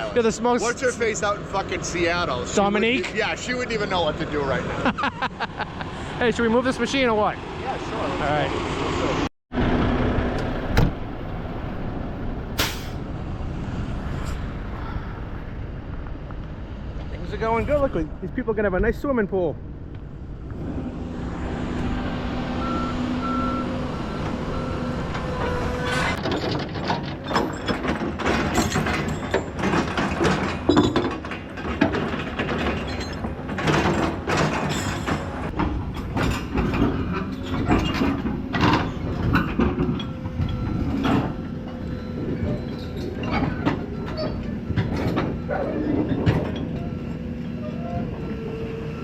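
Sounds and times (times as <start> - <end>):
steel tracks clanking: 12.4 - 13.1, 20.5 - 48.9
excavator diesel engine running: 20.1 - 30.7, 31.3 - 49.0.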